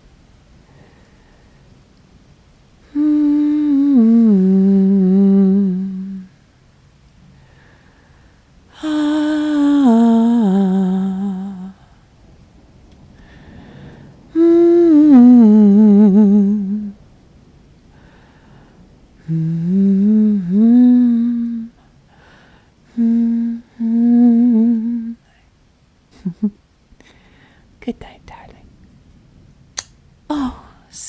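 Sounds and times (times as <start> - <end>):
woman humming a lullaby: 2.8 - 6.3, 8.7 - 11.9, 14.3 - 17.0, 19.2 - 21.8, 22.9 - 25.3, 30.3 - 31.0.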